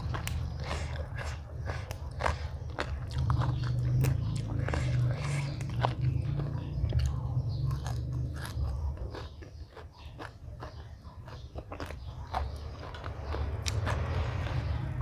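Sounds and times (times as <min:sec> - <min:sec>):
person chewing crunchy food: 0:00.0 - 0:15.0
low hum: 0:12.0 - 0:15.0.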